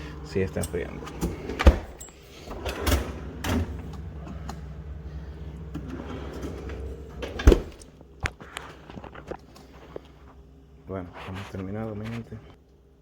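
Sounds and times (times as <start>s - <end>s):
low steady hum: 0.0s - 13.0s
refrigerator door thump shutting: 7.2s - 7.8s.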